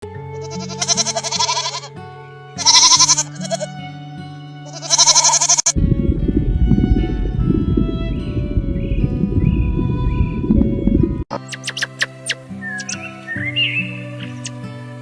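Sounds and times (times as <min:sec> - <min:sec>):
background music: 0:00.0 - 0:15.0
loud low rumbling: 0:05.8 - 0:11.3.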